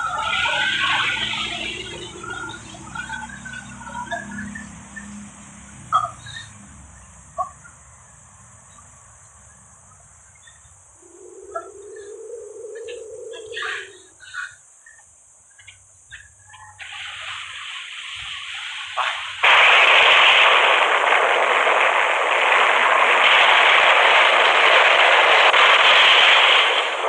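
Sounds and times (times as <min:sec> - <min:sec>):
rising noise: 0:11.0 - 0:14.0
rapid continuous gunfire: 0:19.4 - 0:27.0.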